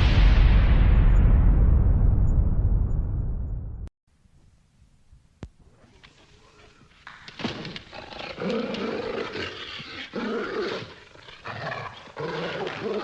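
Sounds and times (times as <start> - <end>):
dog growling and snarling: 7.6 - 13.0.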